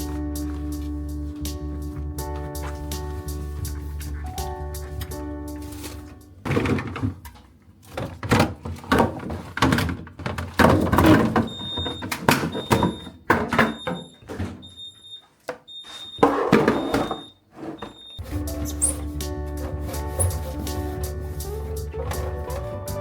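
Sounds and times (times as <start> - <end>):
household knocks and thumps: 6.4 - 14.8, 15.5 - 18.1.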